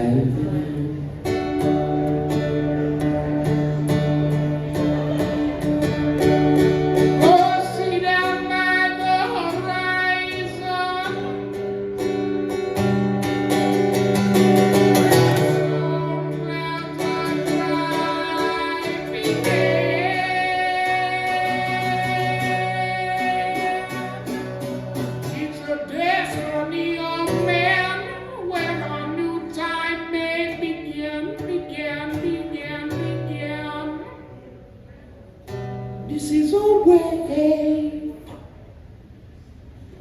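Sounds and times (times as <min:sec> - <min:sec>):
acoustic guitar: 0:00.0 - 0:40.0
person singing: 0:07.0 - 0:11.6, 0:14.7 - 0:34.3.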